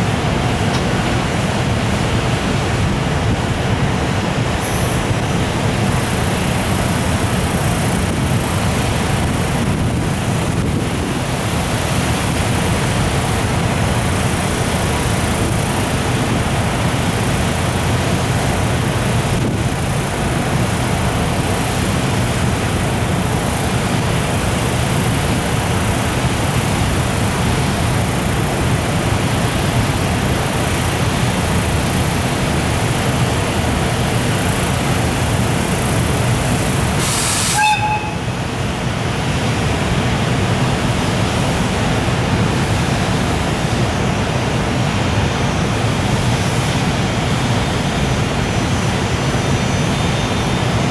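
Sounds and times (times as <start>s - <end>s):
freight train rumbling past: 0.0s - 50.9s
brief high-pitched tones: 37.0s - 38.4s.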